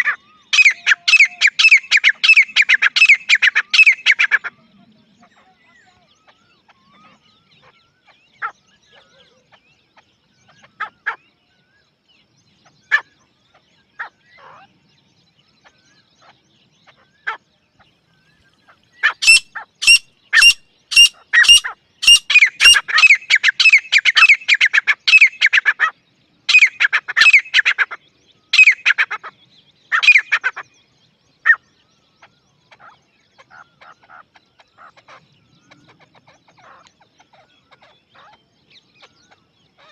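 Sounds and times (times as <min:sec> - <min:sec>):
francolin calling: 0:00.0 - 0:04.6, 0:19.0 - 0:25.9, 0:26.5 - 0:29.3, 0:29.9 - 0:30.6.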